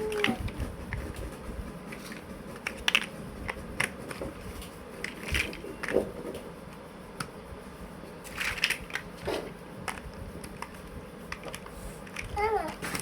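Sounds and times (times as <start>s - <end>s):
plastic blocks clicking together: 2.6s - 3.1s, 8.3s - 9.1s
plastic blocks rattling: 5.0s - 6.2s, 8.2s - 10.0s.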